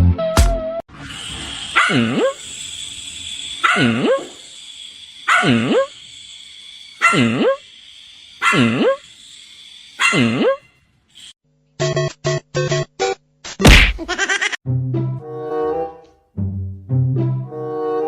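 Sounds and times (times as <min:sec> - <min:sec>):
steady high hiss: 0:01.0 - 0:10.2
dog barking: 0:01.7 - 0:02.4, 0:03.6 - 0:04.2, 0:05.3 - 0:05.9, 0:10.0 - 0:10.6.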